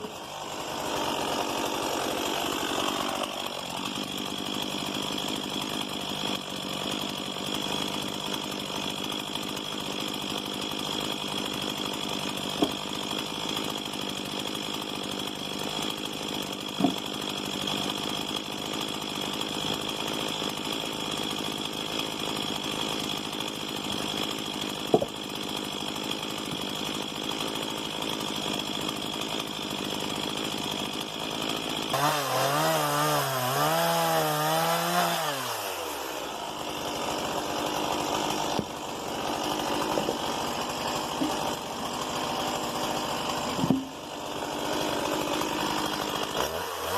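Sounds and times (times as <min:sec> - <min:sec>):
chainsaw engine running: 0:00.0 - 0:46.9.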